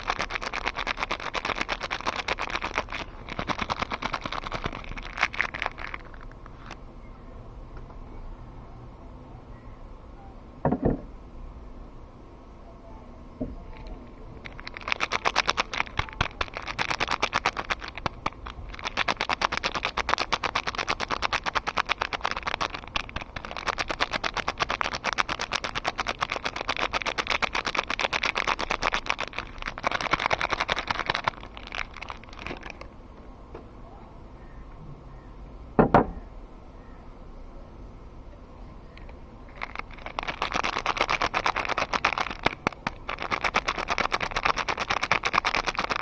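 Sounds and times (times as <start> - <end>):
packaging crackling: 0.0 - 6.8, 13.8 - 32.9, 39.0 - 46.0.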